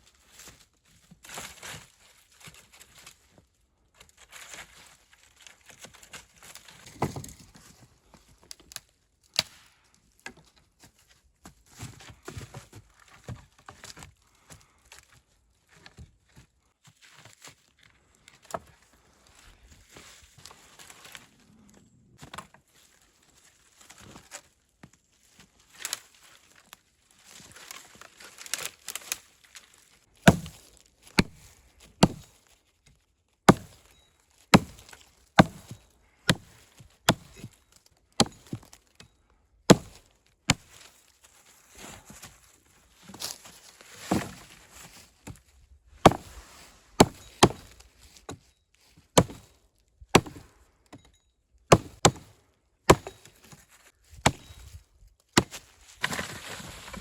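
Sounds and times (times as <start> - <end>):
axe chopping wood: 30.2 - 32.3, 33.5 - 33.9, 34.5 - 37.6, 38.2 - 38.8, 39.7 - 40.8, 44.1 - 44.4, 46.0 - 46.4, 47.0 - 48.4, 49.2 - 49.5, 50.1 - 50.6, 51.7 - 53.5, 54.2 - 54.8, 55.4 - 56.2.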